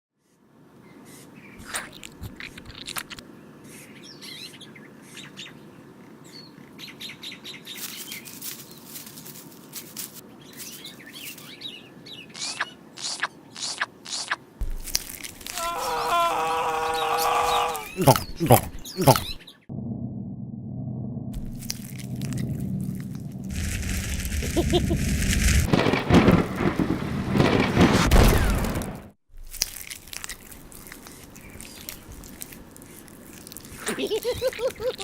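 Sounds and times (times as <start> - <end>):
small birds chirping: 0.8 - 9.1, 10.3 - 19.7, 30.1 - 35.0
pitched bird call: 15.5 - 19.5.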